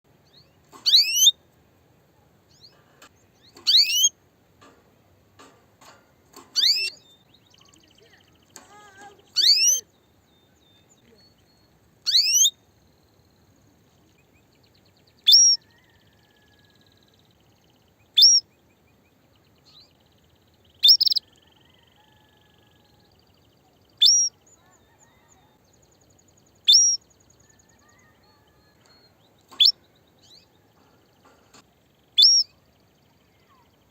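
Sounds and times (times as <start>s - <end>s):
canary calling: 0.7s - 1.4s, 3.4s - 4.2s, 6.3s - 9.9s, 12.0s - 12.6s, 15.2s - 16.6s, 18.1s - 18.5s, 20.8s - 22.5s, 24.0s - 25.5s, 26.6s - 28.8s, 29.5s - 30.4s, 32.2s - 32.6s.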